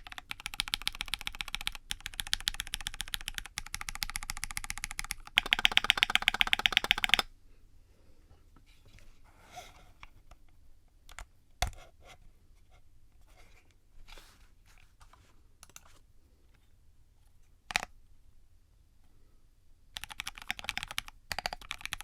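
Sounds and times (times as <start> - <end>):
mechanical keyboard key presses: 0.0 - 7.2, 20.0 - 22.0
fast typing on keyboard: 0.0 - 7.3, 20.0 - 22.0.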